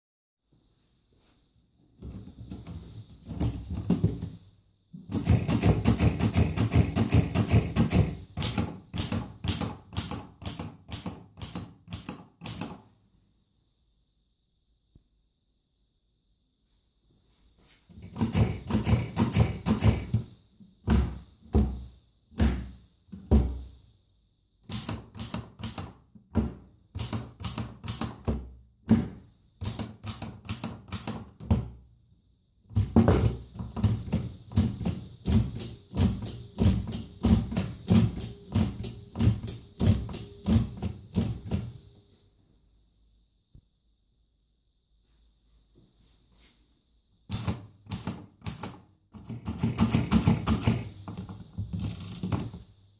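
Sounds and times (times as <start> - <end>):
typewriter key strikes: 5.1 - 12.8, 29.6 - 31.4, 47.3 - 50.9.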